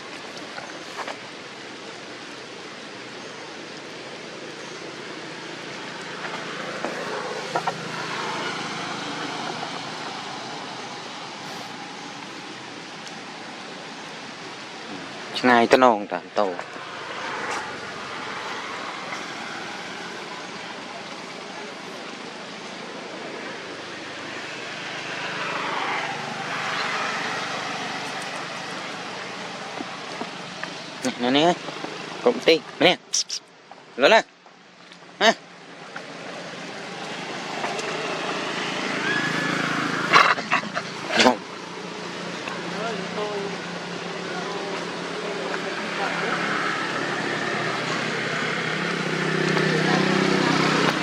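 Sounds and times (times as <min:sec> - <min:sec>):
heavy rain hissing: 0:00.0 - 0:33.5.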